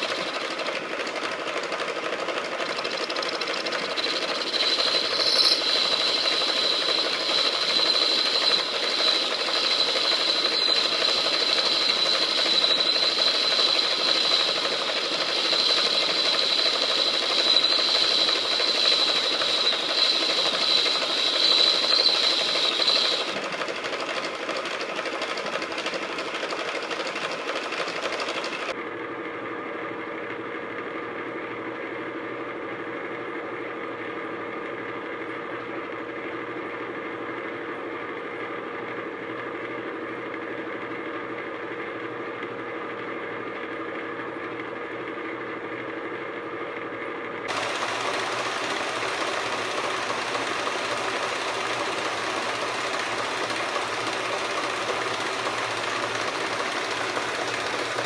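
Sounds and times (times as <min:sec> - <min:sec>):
metal lathe cutting: 0:00.0 - 0:24.8, 0:47.5 - 0:58.0.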